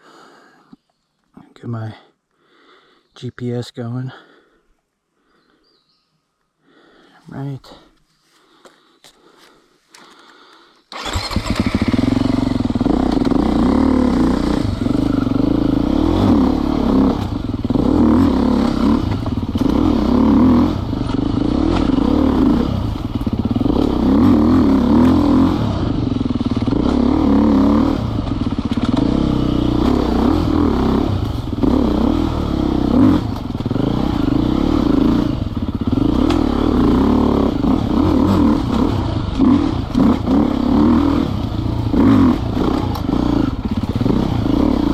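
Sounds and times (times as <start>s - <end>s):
dirt bike engine revving: 10.9s - 44.9s
clatter: 28.3s - 29.2s.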